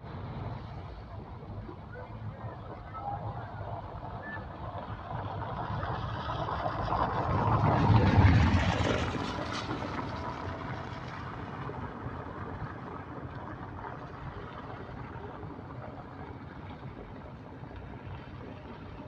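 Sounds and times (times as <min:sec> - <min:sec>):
engine passing by: 0:02.7 - 0:13.3.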